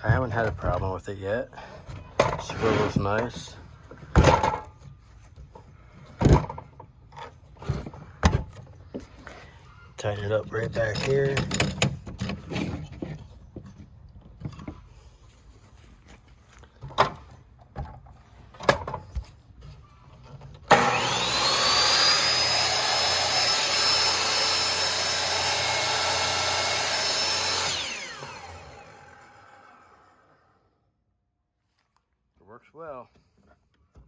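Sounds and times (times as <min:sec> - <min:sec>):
knocks and clicks of handling saw: 0:10.9 - 0:14.8
miter saw motor whining: 0:20.7 - 0:30.7.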